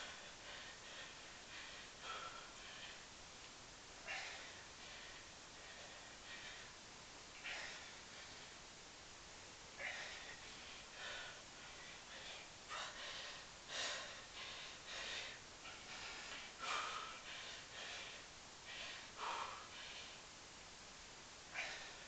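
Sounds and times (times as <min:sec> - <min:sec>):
man breathing hard: 0:00.0 - 0:03.2, 0:04.0 - 0:08.8, 0:09.7 - 0:20.4, 0:21.5 - 0:22.0.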